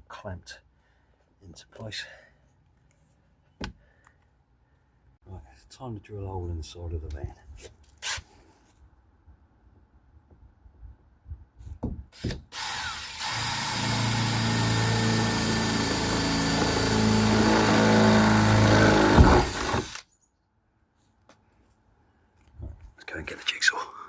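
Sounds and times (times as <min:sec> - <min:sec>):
electric drill boring through steel: 0:12.5 - 0:20.0.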